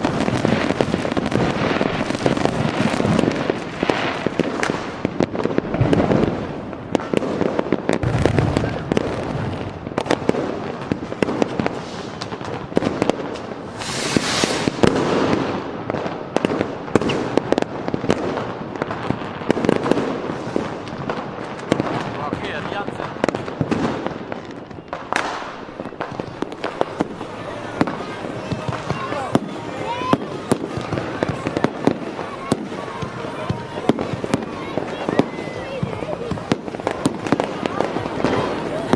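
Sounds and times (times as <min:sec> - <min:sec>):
fireworks bangs and crackles: 0:00.0 - 0:38.9
fireworks hiss: 0:10.0 - 0:38.7.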